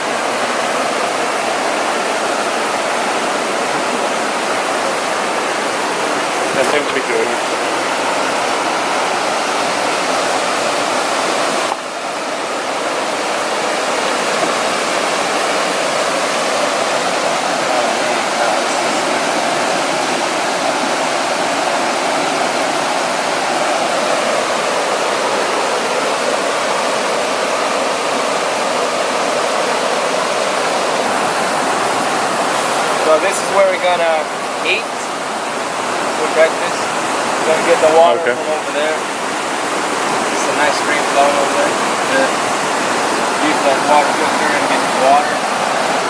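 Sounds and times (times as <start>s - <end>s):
fast-flowing mountain water rushing: 0.0s - 46.0s.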